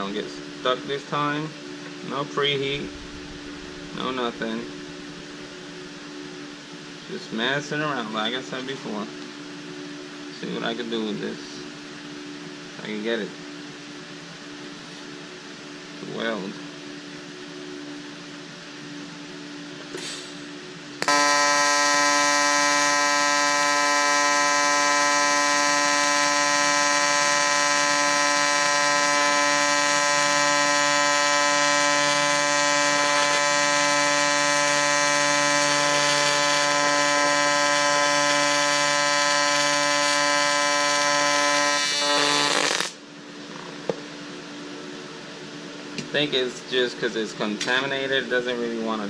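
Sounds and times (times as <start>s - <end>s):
welding arc buzzing: 20.0s - 43.0s.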